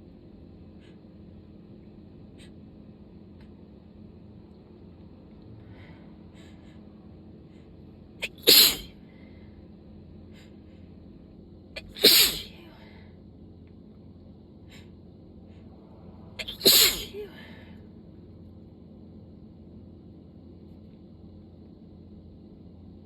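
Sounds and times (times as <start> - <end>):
person sneezing: 8.2 - 9.0, 11.8 - 12.6, 16.4 - 17.6.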